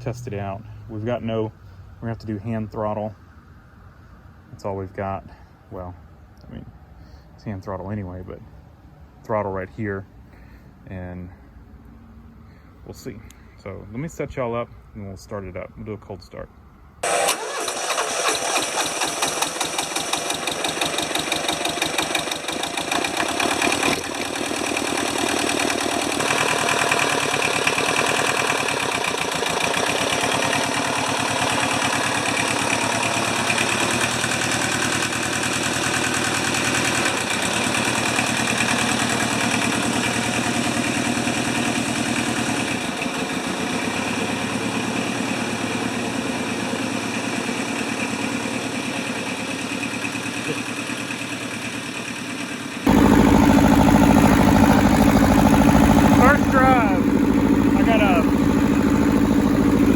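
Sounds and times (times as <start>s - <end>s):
tractor diesel engine clattering: 17.0s - 59.9s.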